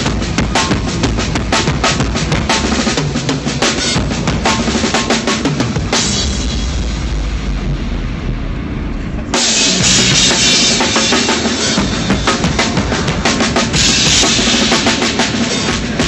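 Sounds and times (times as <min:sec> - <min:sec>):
drum kit played loudly: 0:00.0 - 0:16.0
crashing cymbals: 0:09.3 - 0:16.0.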